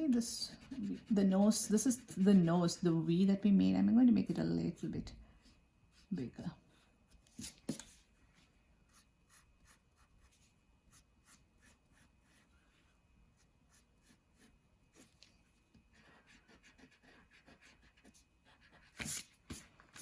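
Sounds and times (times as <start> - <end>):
pencil scratching on paper: 0.0 - 2.8, 8.9 - 12.6, 15.9 - 20.0.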